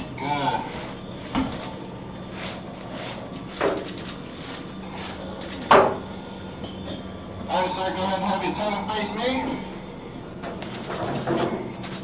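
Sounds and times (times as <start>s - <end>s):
scrubbing strokes: 2.2s - 3.6s.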